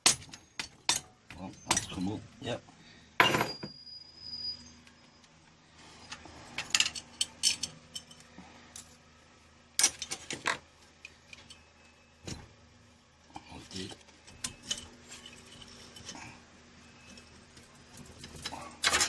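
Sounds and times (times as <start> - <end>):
metal tools and parts clinking: 0.0 - 2.2, 3.2 - 4.5, 6.0 - 9.0, 9.8 - 12.4, 13.7 - 16.3, 16.9 - 19.0.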